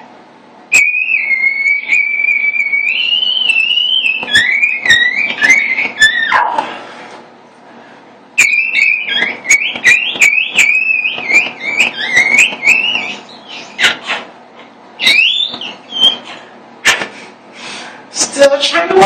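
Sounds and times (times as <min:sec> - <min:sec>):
high squeaky whistle-register voice notes: 0:00.7 - 0:06.6, 0:08.4 - 0:14.3, 0:15.0 - 0:16.4.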